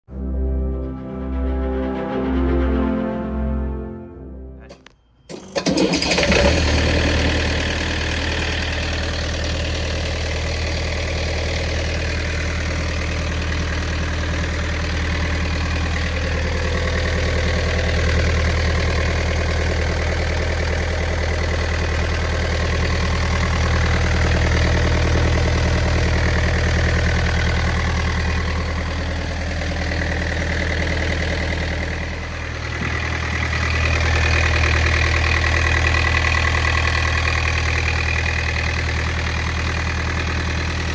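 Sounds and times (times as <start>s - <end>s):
boat diesel engine idling: 5.6s - 40.9s.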